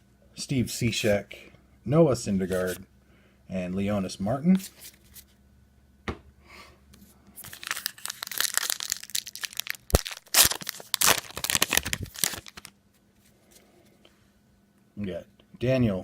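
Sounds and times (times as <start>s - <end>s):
wrapper tearing and crinkling: 7.4s - 12.8s.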